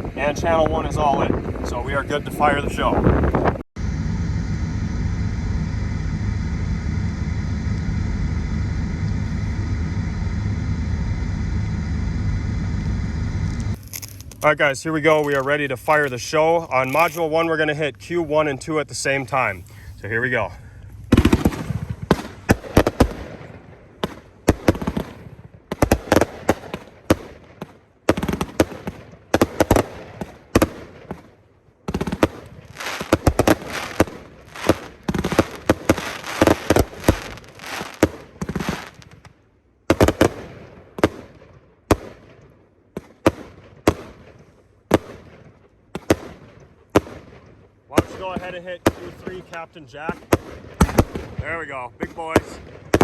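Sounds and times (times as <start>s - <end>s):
firework aerial bangs: 20.9s - 31.3s, 31.9s - 51.4s, 52.1s - 53.0s
firework launch thumps: 21.1s - 23.4s, 31.9s - 39.3s.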